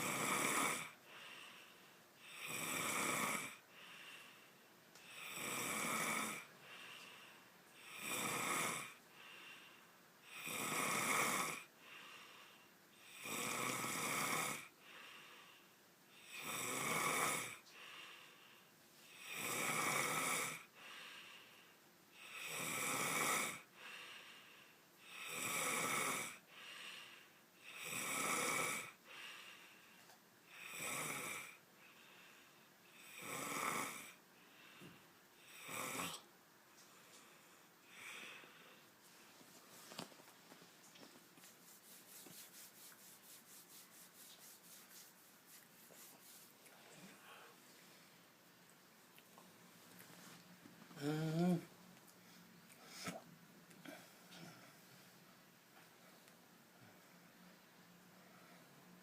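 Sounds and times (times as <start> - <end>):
person snoring loudly: 0.0 - 1.0, 2.3 - 3.6, 5.2 - 6.5, 7.9 - 9.0, 10.4 - 11.7, 16.3 - 17.6, 19.2 - 20.7, 22.3 - 23.7, 33.0 - 34.2, 51.0 - 51.7.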